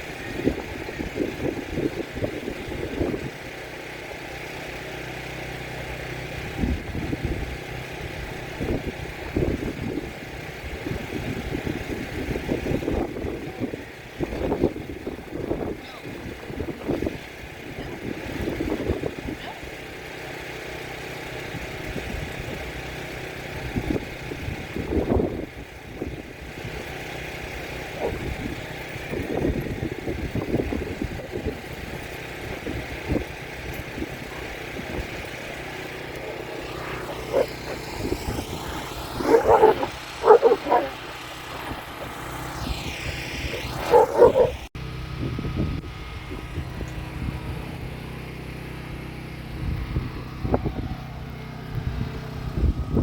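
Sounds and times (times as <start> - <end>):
puppies barking: 27.7 - 28.8, 33.7 - 44.7.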